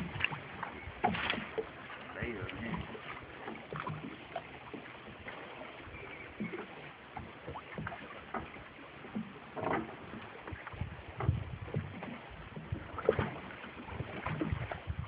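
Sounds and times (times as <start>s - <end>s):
water wash against boat: 0.0s - 15.0s.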